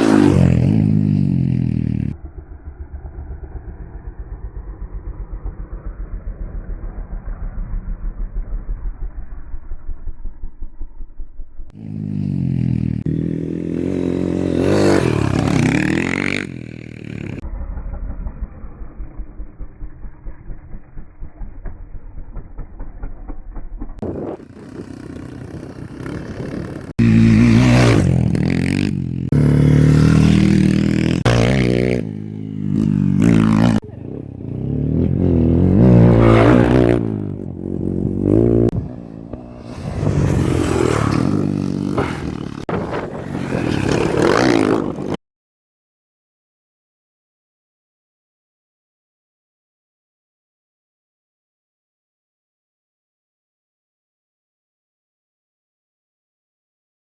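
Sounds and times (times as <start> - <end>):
motocross bike engines revving: 0.0 - 2.3, 11.8 - 17.4, 24.0 - 45.2.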